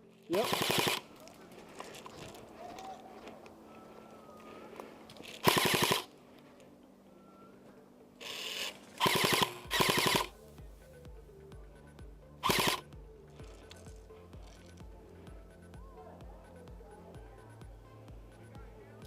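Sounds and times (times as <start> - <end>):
low pulsing music: 0.0 - 19.0
airsoft rifle full-auto bursts: 0.3 - 1.0, 5.4 - 6.1, 8.2 - 10.3, 12.4 - 12.8.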